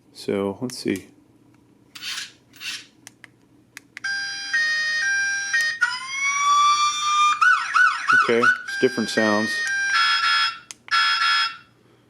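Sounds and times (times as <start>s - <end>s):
electronic siren: 4.1s - 11.7s.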